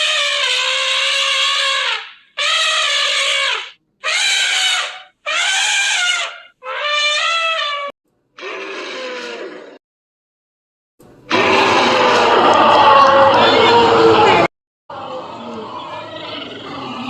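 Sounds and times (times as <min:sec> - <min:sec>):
elephant trumpeting: 0:00.0 - 0:09.8, 0:11.3 - 0:14.5.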